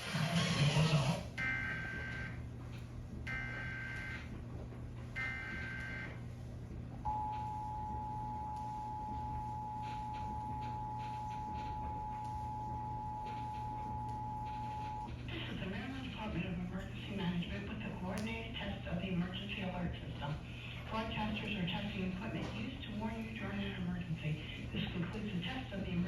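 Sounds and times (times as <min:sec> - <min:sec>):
low steady hum: 0:01.2 - 0:26.0.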